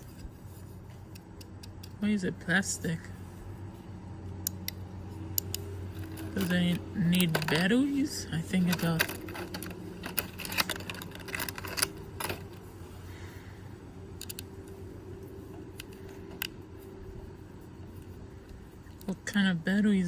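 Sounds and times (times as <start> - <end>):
faint steady hum: 0.0 - 20.0.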